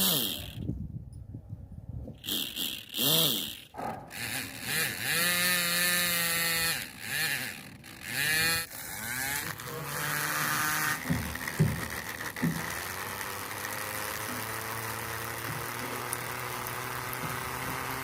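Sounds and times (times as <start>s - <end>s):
small motor whining: 0.0s - 0.7s, 2.2s - 18.0s
sharp knocks: 3.7s - 4.1s, 11.0s - 12.7s.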